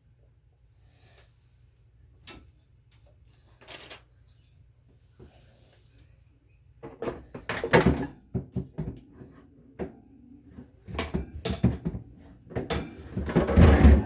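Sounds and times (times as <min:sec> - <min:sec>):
plastic fridge trays clattering: 0:06.8 - 0:09.9, 0:10.9 - 0:14.0.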